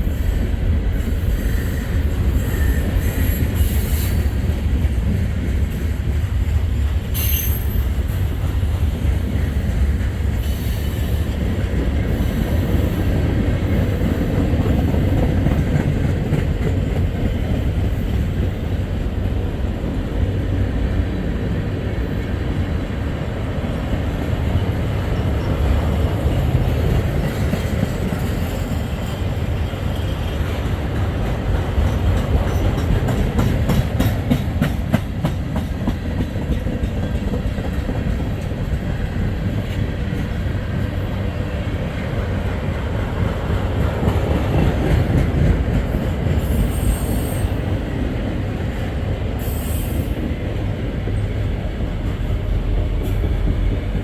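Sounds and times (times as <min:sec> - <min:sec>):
freight train rumbling: 0:00.0 - 0:54.0
high-pitched wheel squeals: 0:01.4 - 0:04.3.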